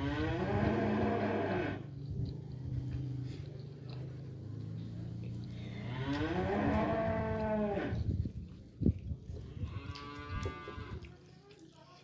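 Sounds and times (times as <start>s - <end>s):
drawn-out animal calls: 0.0s - 2.4s.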